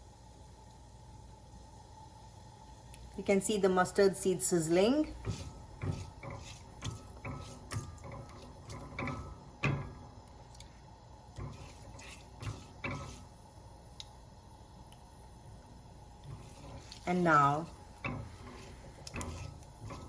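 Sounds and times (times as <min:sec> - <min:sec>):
mustard seeds popping in hot oil: 0:05.1 - 0:15.1, 0:16.1 - 0:20.0.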